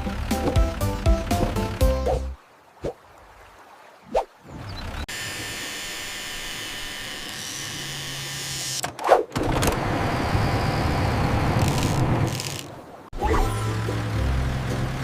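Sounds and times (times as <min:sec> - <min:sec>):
vehicle engine running: 0:00.0 - 0:02.4, 0:13.6 - 0:15.0.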